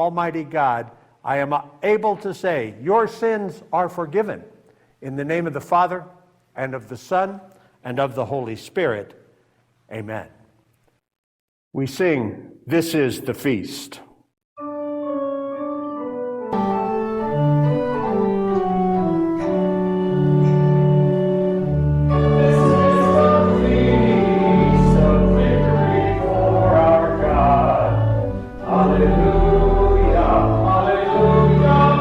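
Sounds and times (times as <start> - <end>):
church organ playing: 14.6 - 32.0
voices singing: 22.1 - 32.0.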